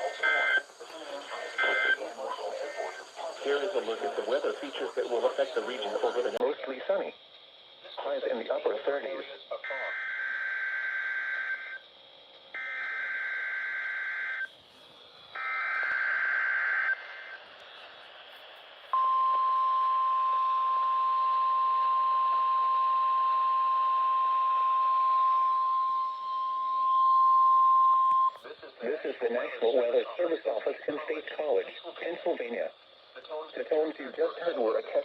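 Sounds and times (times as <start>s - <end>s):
steady warning alarm tone: 0.0s - 6.4s, 9.6s - 11.9s, 12.5s - 14.5s, 15.2s - 17.4s, 19.0s - 28.4s.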